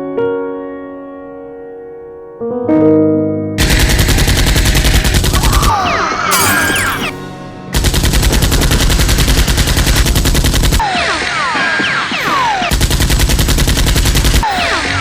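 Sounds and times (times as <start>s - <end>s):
quick falling whistles: 5.4s - 7.4s
music: 14.4s - 15.0s.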